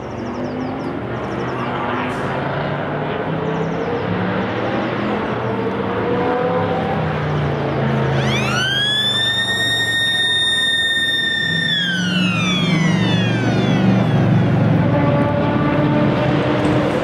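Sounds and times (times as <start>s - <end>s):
racing car engines: 0.0s - 17.0s
high siren-like tone: 7.9s - 15.9s.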